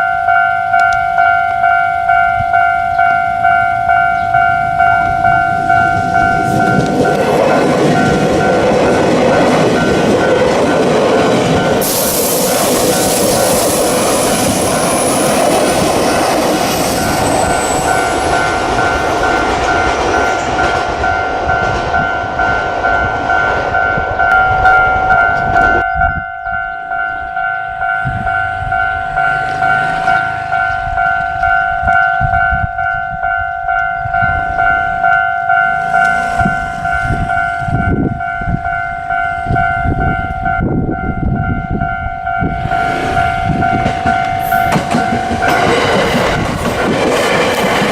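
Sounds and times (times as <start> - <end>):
electric train rushing past: 0.0 - 47.9
level crossing warning bell: 0.0 - 47.9
wheels clattering on rail joints: 3.0 - 26.0, 42.3 - 47.9.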